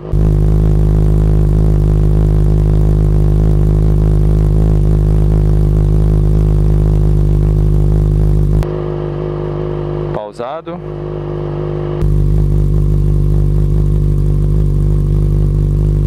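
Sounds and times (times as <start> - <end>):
motorcycle engine idling: 0.0 - 8.7, 12.0 - 16.0.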